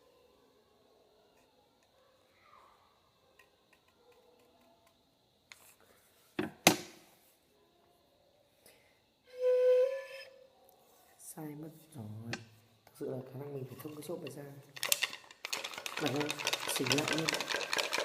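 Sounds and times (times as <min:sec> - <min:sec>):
bamboo flute steady note: 0:09.3 - 0:10.4.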